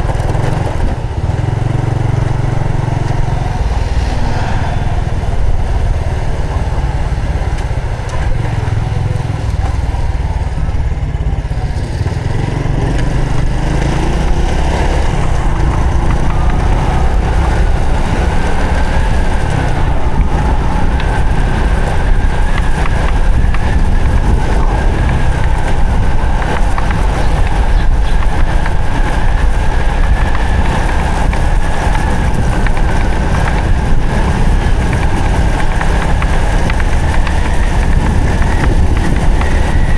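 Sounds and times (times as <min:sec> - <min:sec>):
motorcycle engine running: 0:00.0 - 0:39.9
wind noise on microphone: 0:00.0 - 0:39.9.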